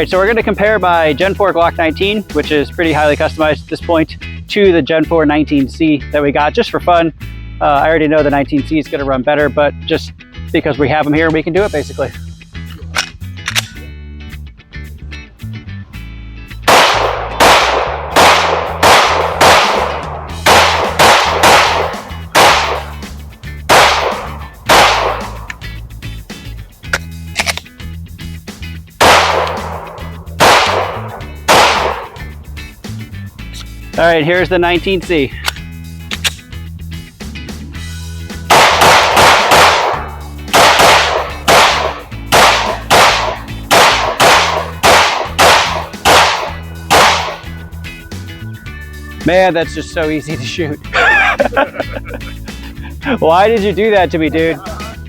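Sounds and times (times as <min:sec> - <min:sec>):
background music: 0:00.0 - 0:55.0
pistol shots echoing: 0:16.7 - 0:23.1, 0:23.7 - 0:25.4, 0:29.0 - 0:32.2, 0:38.5 - 0:47.5.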